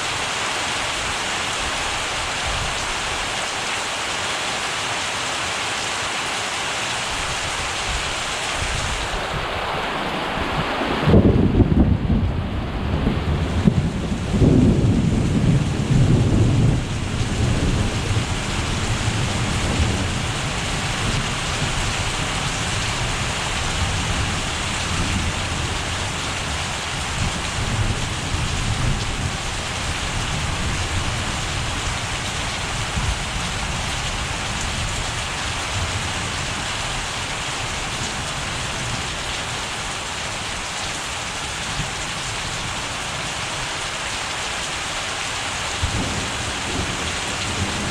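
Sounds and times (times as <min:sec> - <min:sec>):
heavy rain: 0:00.0 - 0:47.9
thunder rumbling: 0:08.7 - 0:37.1, 0:45.8 - 0:47.9.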